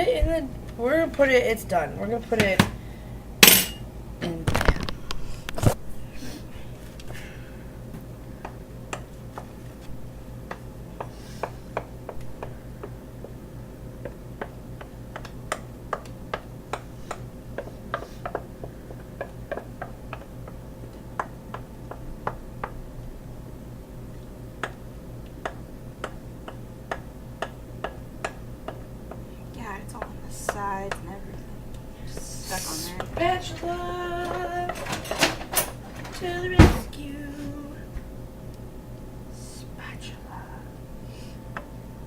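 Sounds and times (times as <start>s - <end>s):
steady low hum: 0.0s - 42.0s
utensil tapping mixing bowl: 14.0s - 20.6s, 24.6s - 31.4s.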